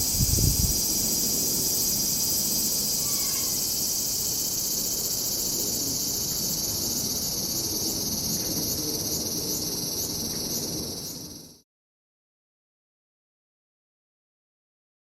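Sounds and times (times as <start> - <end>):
cicadas droning: 0.0 - 11.6.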